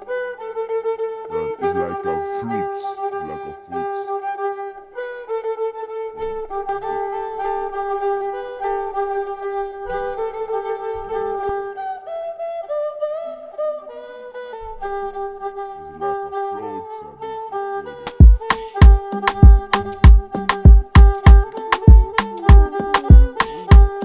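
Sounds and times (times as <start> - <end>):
fiddle-like lead melody: 0.0 - 24.0
bass and drum beat: 18.1 - 24.0.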